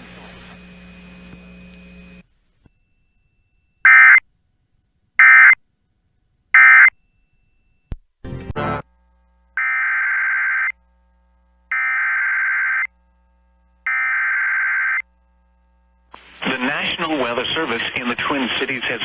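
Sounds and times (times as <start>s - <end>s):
faint radio hiss and hum: 15.0s - 19.0s.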